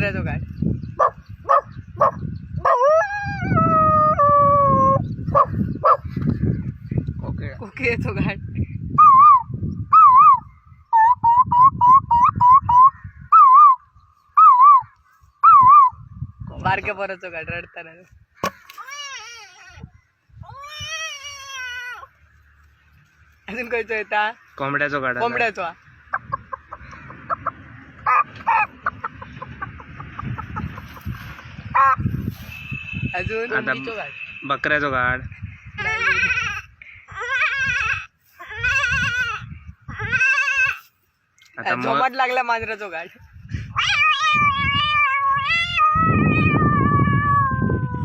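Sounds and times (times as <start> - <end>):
boy whistling bird call: 9.0 - 16.1
boy imitating chicken clucks: 26.1 - 32.1, 35.8 - 40.9.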